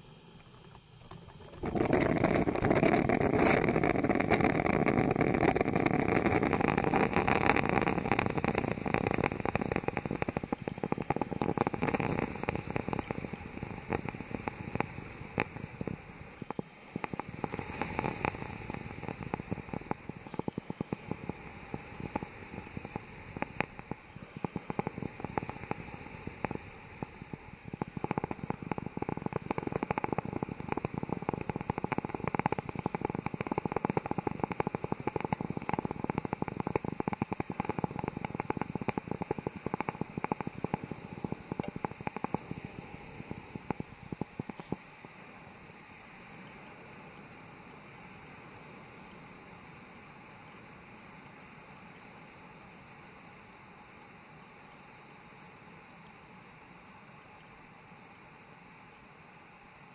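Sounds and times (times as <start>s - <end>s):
coffee machine crackles and pops: 0.0s - 21.3s, 22.0s - 44.8s
coffee machine rushing: 0.5s - 8.6s.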